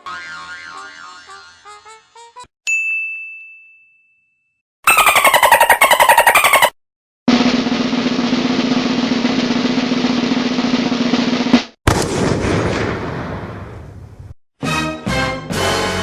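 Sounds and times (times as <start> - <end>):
snare drum roll: 7.3 - 12.8.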